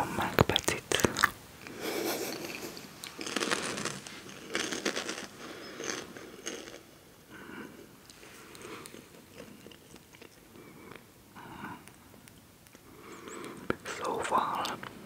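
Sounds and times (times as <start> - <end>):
crunchy snack being chewed: 2.3 - 6.9, 8.1 - 11.1.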